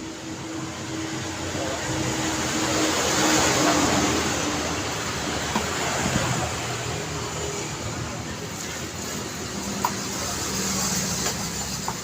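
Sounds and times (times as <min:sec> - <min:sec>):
road traffic: 0:00.0 - 0:12.0
vehicle passing close: 0:01.1 - 0:08.3.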